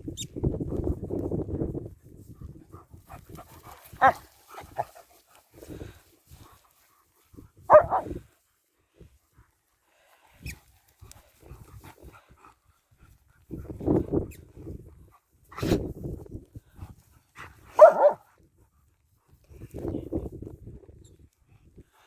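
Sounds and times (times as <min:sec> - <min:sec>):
dog barking: 0:07.7 - 0:08.1, 0:17.7 - 0:18.2.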